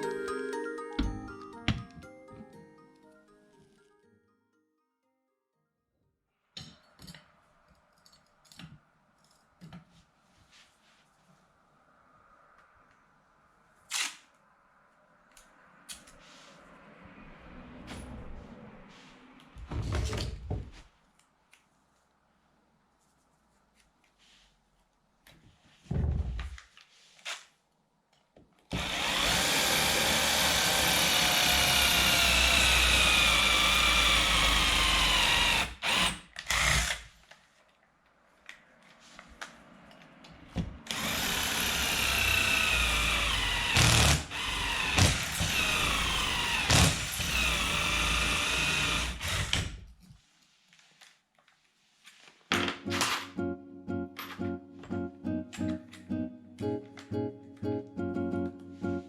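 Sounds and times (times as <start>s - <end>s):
handheld power tool motor running: 28.8s - 37.1s, 40.9s - 49.8s.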